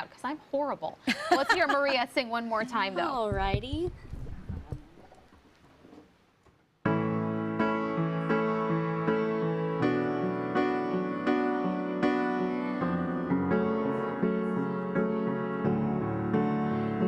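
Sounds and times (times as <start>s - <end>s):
piano chords: 6.8s - 17.0s.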